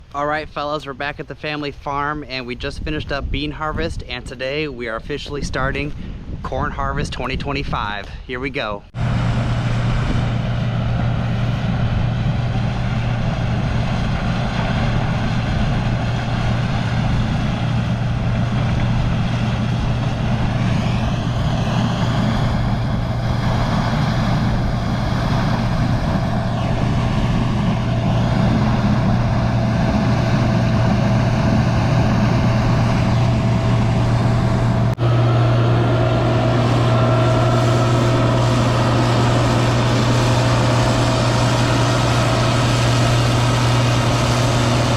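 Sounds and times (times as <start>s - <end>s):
combine harvester humming: 8.9s - 44.9s
machinery whine: 9.0s - 44.9s.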